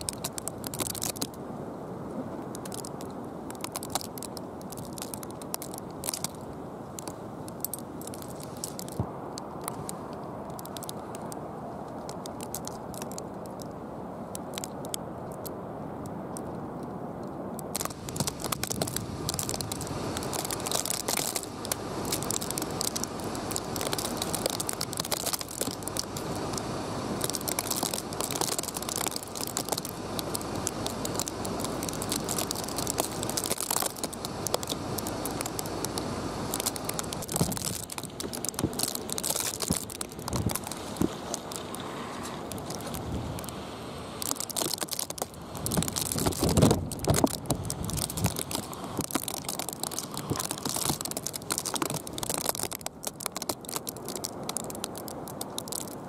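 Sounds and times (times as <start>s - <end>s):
wind rushing over microphone: 0.0s - 52.3s
small crackles and ticks: 0.0s - 56.0s.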